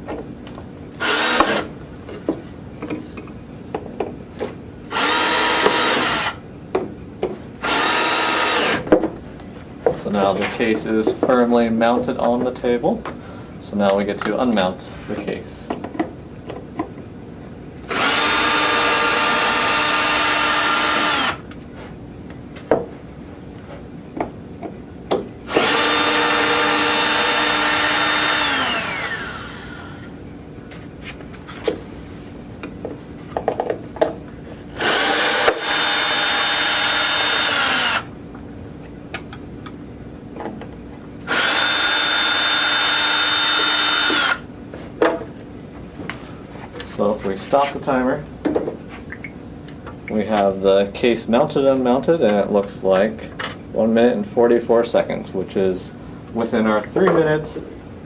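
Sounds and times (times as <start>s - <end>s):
power drill running: 1.0s - 1.7s, 4.9s - 6.4s, 7.6s - 8.9s, 17.8s - 21.5s, 25.4s - 30.1s, 34.7s - 38.1s, 41.2s - 44.5s
handling clicks and knocks: 15.2s - 17.1s.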